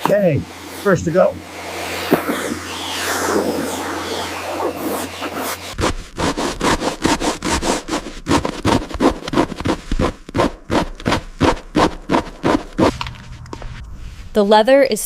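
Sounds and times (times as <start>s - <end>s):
rapid scrubbing on a surface: 1.7s - 12.9s.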